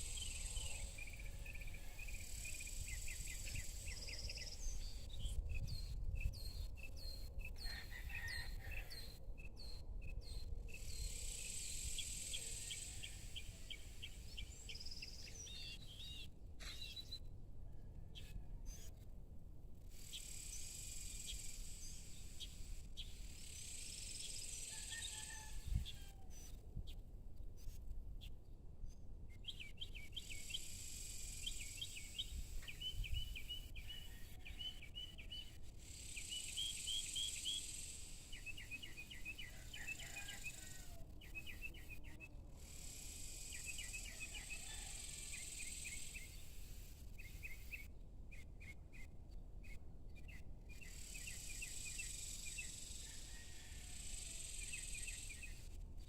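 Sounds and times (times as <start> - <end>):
small birds chirping: 26.9 - 40.2
insects buzzing: 54.0 - 55.7.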